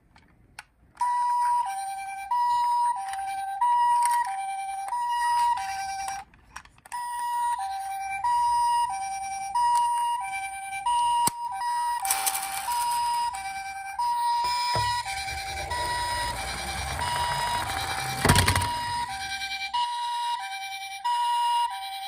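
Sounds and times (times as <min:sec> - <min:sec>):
two-tone ambulance siren: 0:01.0 - 0:06.2, 0:06.9 - 0:22.0.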